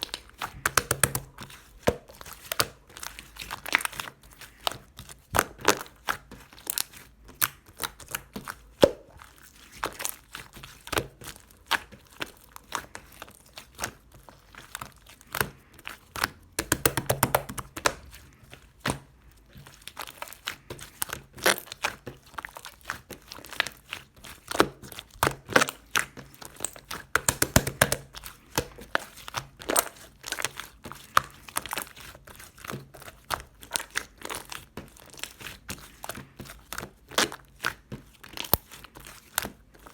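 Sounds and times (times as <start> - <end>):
slime crackling and popping: 0.0 - 39.9.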